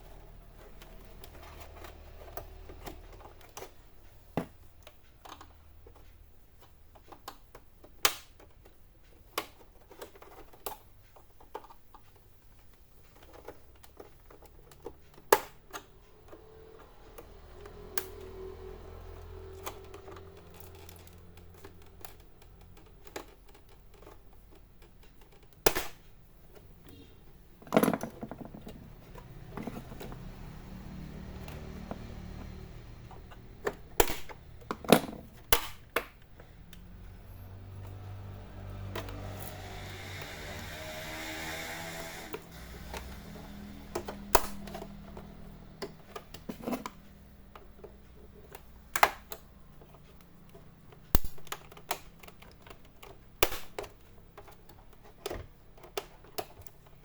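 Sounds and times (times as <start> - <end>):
plastic cover clicking and snapping: 0.4 - 41.1, 42.2 - 57.0
crackling plastic snap: 7.0 - 10.8, 17.7 - 26.2, 28.7 - 37.1, 47.6 - 50.3, 51.0 - 57.0.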